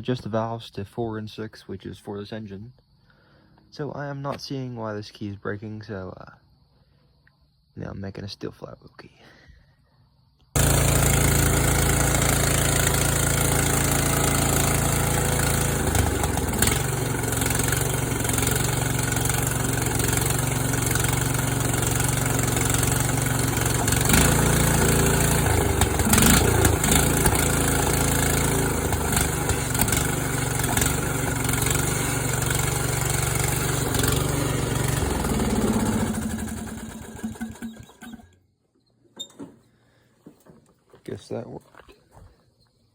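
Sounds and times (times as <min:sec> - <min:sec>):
riding mower engine running: 0:10.6 - 0:38.3.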